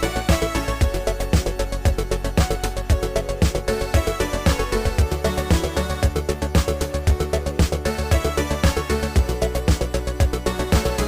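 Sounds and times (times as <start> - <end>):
electronic music beat: 0.0 - 11.0.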